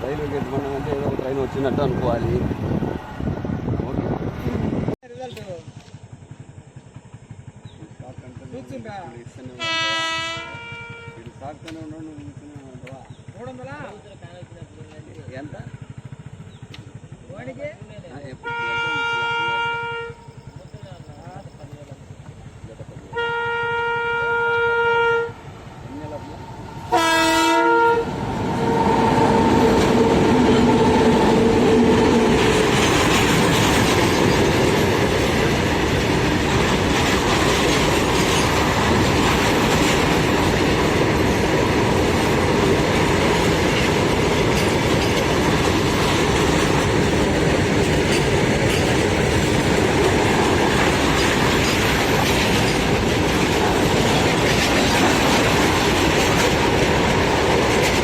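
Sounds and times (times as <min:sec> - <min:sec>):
train wheels clattering on rails: 0:05.2 - 0:18.4, 0:20.2 - 0:23.2, 0:28.1 - 0:58.0
train horn: 0:09.5 - 0:11.4, 0:18.4 - 0:20.4, 0:23.1 - 0:25.5, 0:26.8 - 0:32.6.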